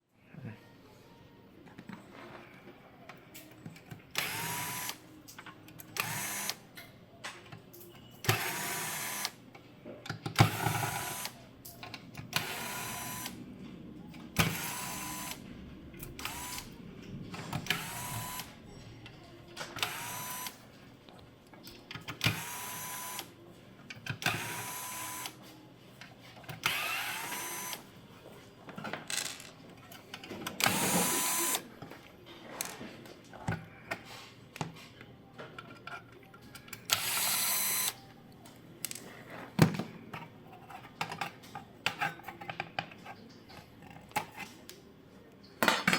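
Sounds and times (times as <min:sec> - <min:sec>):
power screwdriver motor whirring: 0:04.2 - 0:05.0, 0:08.3 - 0:09.3, 0:10.4 - 0:11.4, 0:17.7 - 0:18.5, 0:19.8 - 0:20.6, 0:26.7 - 0:27.8, 0:30.6 - 0:31.6, 0:36.9 - 0:38.0.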